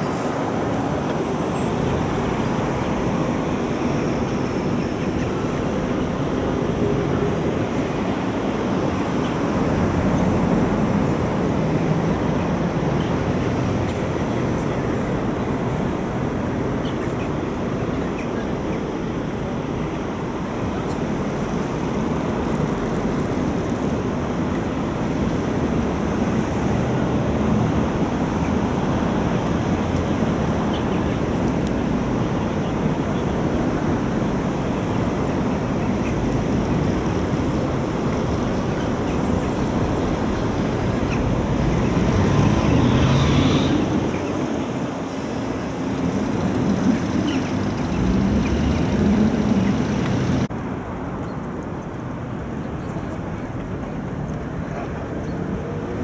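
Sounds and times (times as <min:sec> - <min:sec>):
low outdoor rumble: 0:43.7 - 0:51.0.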